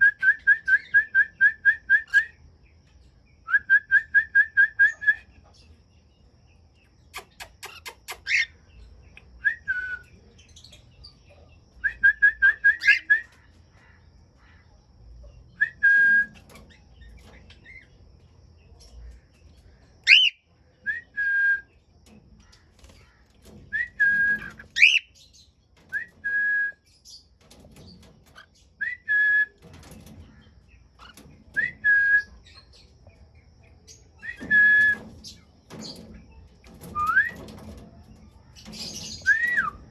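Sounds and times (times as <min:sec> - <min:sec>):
cockatiels whistling: 0:07.2 - 0:08.5, 0:12.2 - 0:13.2, 0:20.1 - 0:21.2, 0:23.8 - 0:25.1, 0:36.9 - 0:37.4, 0:39.2 - 0:39.8
sharp rising bird calls: 0:20.1 - 0:20.4, 0:24.8 - 0:25.1.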